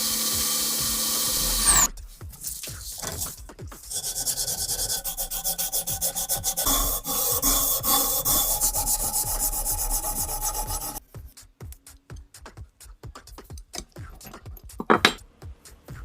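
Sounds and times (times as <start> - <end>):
abrasive scraping rust off metal: 1.4 - 11.0.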